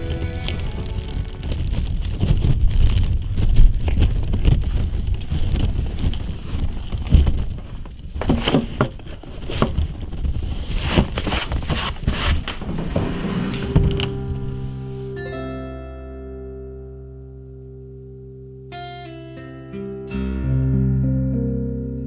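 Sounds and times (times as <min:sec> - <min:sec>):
crunching in snow: 0:00.0 - 0:08.1
wind buffeting microphone: 0:00.0 - 0:08.2.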